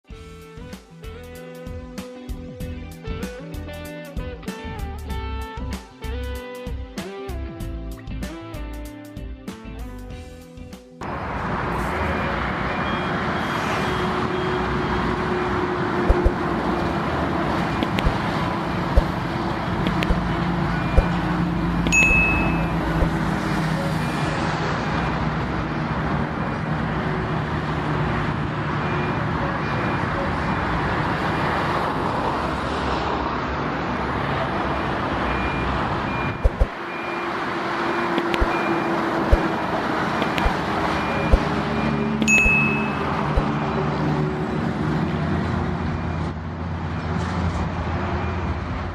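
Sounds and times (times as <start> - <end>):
heavy highway traffic: 11.0 - 48.9
short high beep: 21.9 - 23.2, 41.0 - 43.1.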